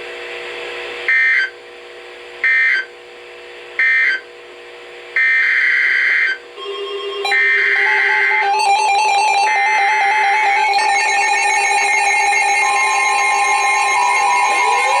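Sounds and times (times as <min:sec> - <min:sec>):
music: 0:06.6 - 0:15.0
buzzing digital data bursts: 0:10.2 - 0:15.0.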